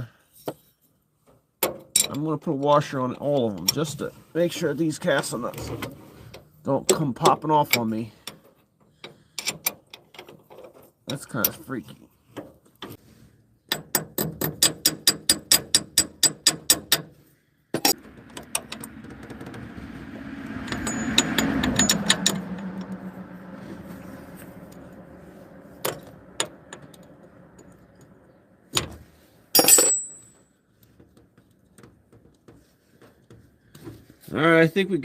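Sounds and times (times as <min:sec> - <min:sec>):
mechanical rattle with low hum: 0:17.7 - 0:30.3
metal knocks: 0:17.8 - 0:23.6
ratchet wrench clicking: 0:20.7 - 0:22.4.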